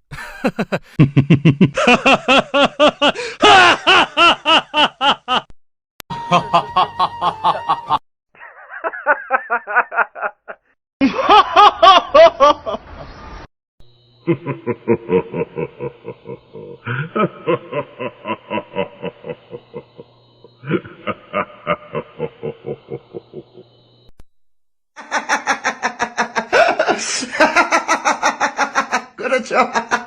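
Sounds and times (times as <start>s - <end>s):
person laughing: 0.1s - 5.6s, 6.2s - 12.8s, 14.3s - 23.6s, 25.0s - 30.0s.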